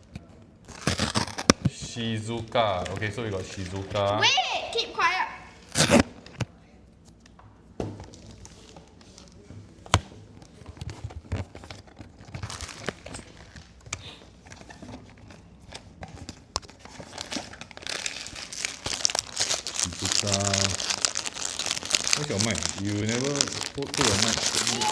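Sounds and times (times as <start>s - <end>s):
plastic wrapper crinkling: 0.7s - 1.6s, 10.8s - 24.9s.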